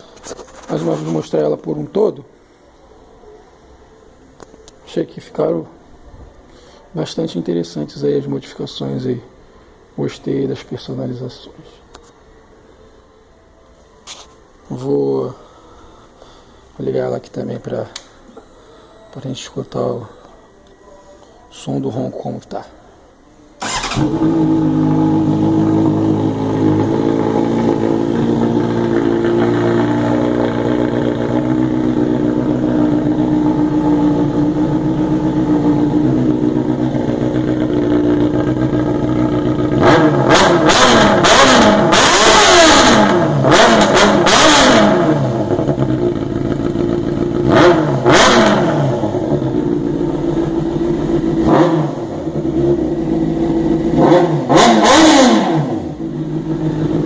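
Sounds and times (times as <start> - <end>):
motorcycle engine idling and revving: 23.6 - 57.0.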